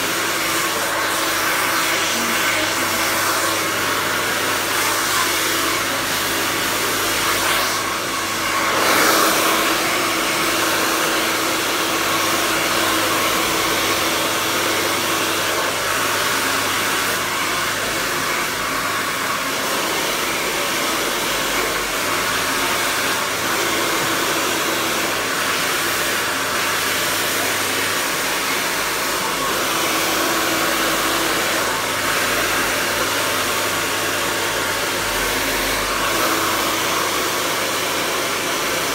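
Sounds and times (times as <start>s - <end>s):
hair dryer blowing: 0.0s - 38.9s.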